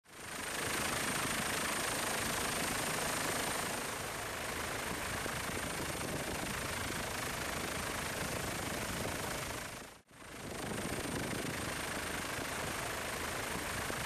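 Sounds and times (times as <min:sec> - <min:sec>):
helicopter engine and rotor: 0:00.1 - 0:14.0.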